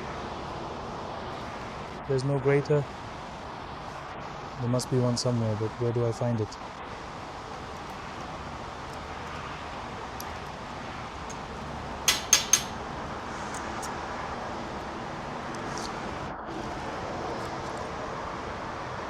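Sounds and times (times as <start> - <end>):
steady background hiss: 0.0 - 19.0
sharp clinks of hard objects: 12.0 - 12.8.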